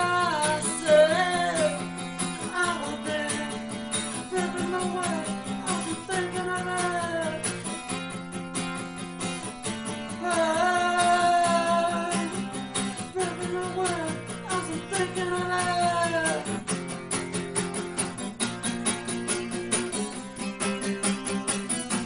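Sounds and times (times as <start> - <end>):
person singing: 0.0 - 16.9
strummed guitar: 0.0 - 22.0.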